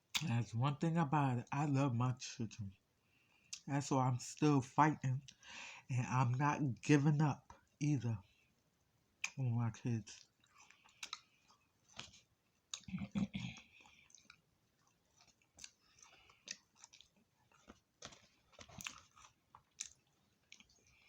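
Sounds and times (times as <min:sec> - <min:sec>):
chewing fried food: 0:06.2 - 0:21.0
wet mouth clicks: 0:10.9 - 0:11.2, 0:12.7 - 0:14.4.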